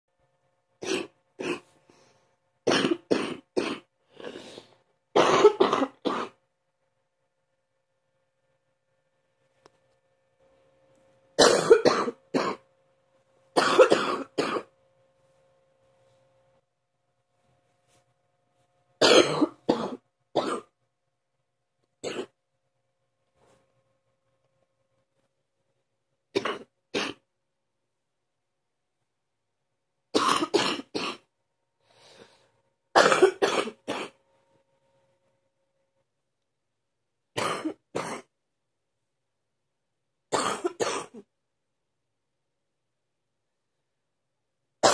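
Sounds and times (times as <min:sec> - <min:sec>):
person coughing harshly: 0:00.8 - 0:01.7, 0:02.6 - 0:06.4, 0:11.4 - 0:12.6, 0:13.6 - 0:14.7, 0:19.0 - 0:20.7, 0:22.0 - 0:22.4, 0:26.3 - 0:27.3, 0:30.2 - 0:31.3, 0:32.9 - 0:34.2, 0:37.4 - 0:38.4, 0:40.3 - 0:41.3
person breathing: 0:01.8 - 0:02.4, 0:04.0 - 0:04.8, 0:31.8 - 0:32.7.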